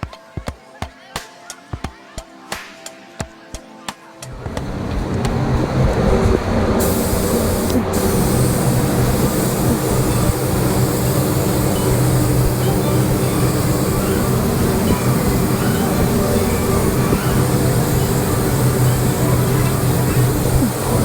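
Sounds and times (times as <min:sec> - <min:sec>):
spray gun hissing: 0:04.3 - 0:21.0
steady low hum: 0:04.3 - 0:21.0.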